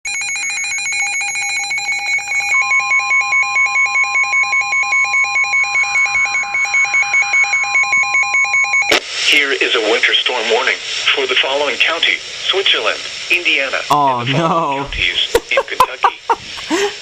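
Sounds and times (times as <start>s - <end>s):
steady warning alarm tone: 0.1s - 9.0s
alarm beeping low and high: 0.8s - 8.9s.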